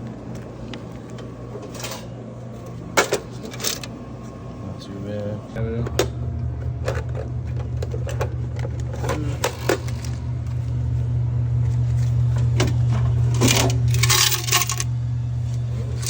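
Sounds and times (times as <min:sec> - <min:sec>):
steady low hum: 0:00.0 - 0:16.0
coins pouring clatter: 0:13.5 - 0:14.9
coins clinking and jingling: 0:13.9 - 0:14.9.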